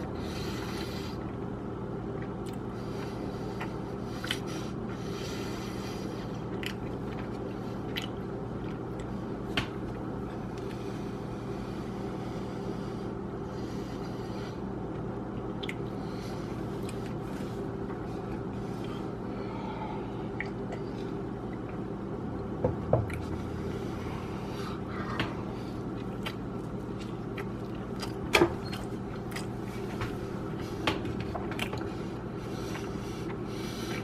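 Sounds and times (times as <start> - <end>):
steady electrical hum: 0.0 - 34.0
biting and chewing: 6.2 - 9.2, 25.8 - 32.0.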